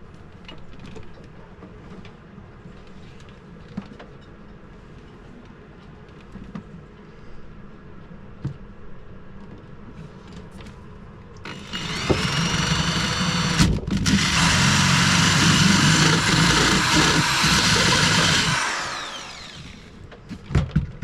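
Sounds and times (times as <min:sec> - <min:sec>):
power drill whining: 0:11.4 - 0:20.0.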